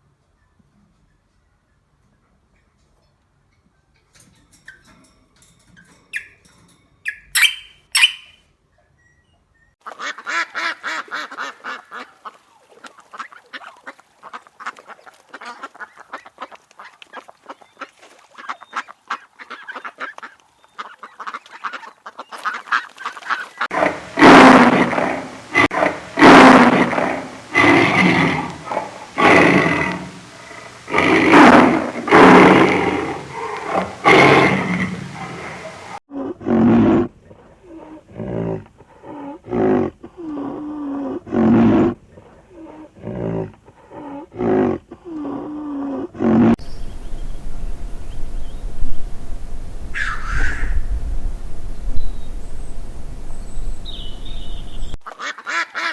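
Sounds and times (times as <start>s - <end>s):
loud goose calls: 7.1s - 8.4s, 46.6s - 55.9s
flock of ducks chattering: 46.6s - 55.9s.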